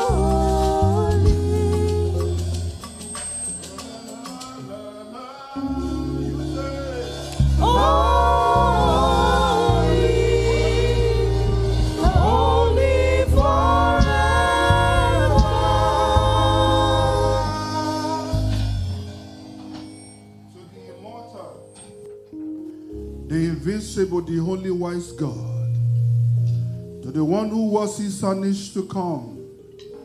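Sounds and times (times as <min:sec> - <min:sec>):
gospel singing voice: 0:00.0 - 0:19.5, 0:23.3 - 0:25.8
keyboard and bass accompaniment: 0:00.0 - 0:30.0.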